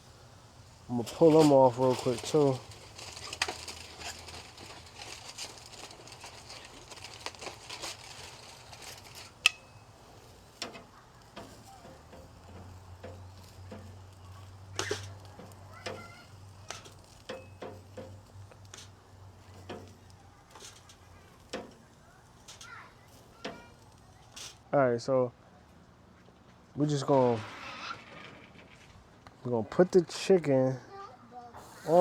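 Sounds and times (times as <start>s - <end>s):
food sizzling on a grill: 0.0s - 25.7s, 26.8s - 32.0s
metal utensils clicking: 1.2s - 16.1s, 16.7s - 22.7s.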